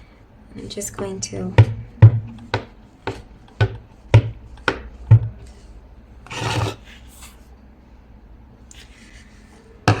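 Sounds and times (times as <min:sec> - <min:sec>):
ink pad tapping on stamp: 0:01.0 - 0:05.3.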